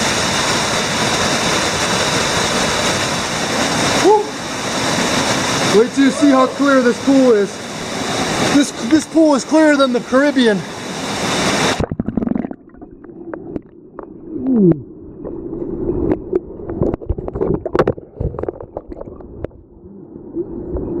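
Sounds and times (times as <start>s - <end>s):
waterfall hiss: 0.0s - 11.8s
falling bubbly glide: 11.1s - 21.0s
underwater clicks and knocks: 11.8s - 14.6s, 16.0s - 19.6s
muffled underwater gurgling: 11.8s - 15.0s.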